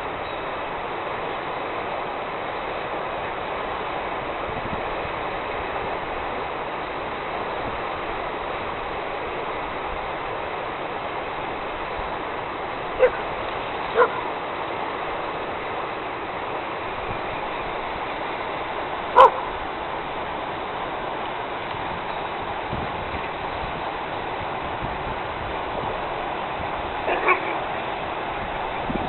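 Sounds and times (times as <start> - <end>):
river rushing: 0.0 - 29.0
dog barking: 13.0 - 13.2, 14.0 - 14.2, 19.2 - 19.5, 27.1 - 27.6.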